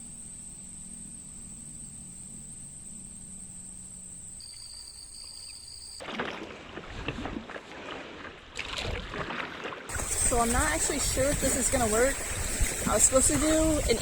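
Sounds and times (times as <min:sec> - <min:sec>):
insects chorus: 0:00.0 - 0:06.2, 0:09.9 - 0:14.0
water splashing: 0:06.0 - 0:14.0
wind noise: 0:09.9 - 0:14.0.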